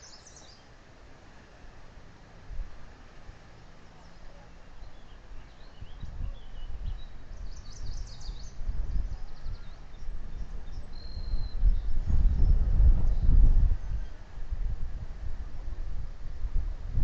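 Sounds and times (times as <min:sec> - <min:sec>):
faint high bird chirps: 0:00.0 - 0:00.7, 0:03.8 - 0:14.2
wind buffeting microphone: 0:05.2 - 0:17.0.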